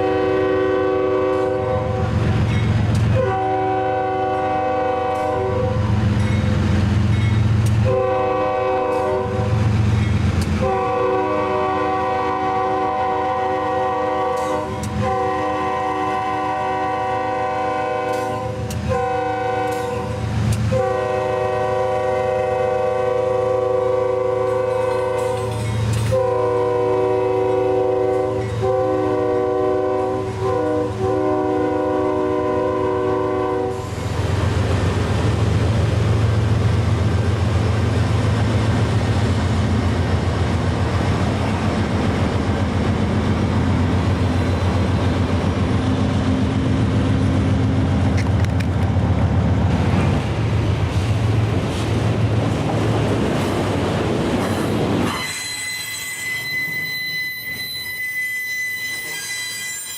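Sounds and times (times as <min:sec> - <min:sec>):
locomotive air horn blasts: 0:00.0 - 0:02.2, 0:03.1 - 0:05.9, 0:07.8 - 0:09.6, 0:10.6 - 0:33.9, 0:55.1 - 0:59.9
train passing rumble: 0:00.0 - 0:59.9.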